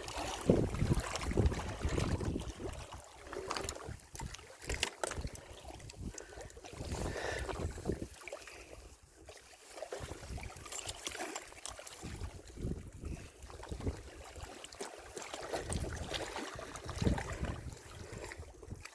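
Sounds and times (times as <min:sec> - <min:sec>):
wind buffeting microphone: 0:00.0 - 0:03.0, 0:05.1 - 0:08.2, 0:12.0 - 0:14.2, 0:15.6 - 0:18.9.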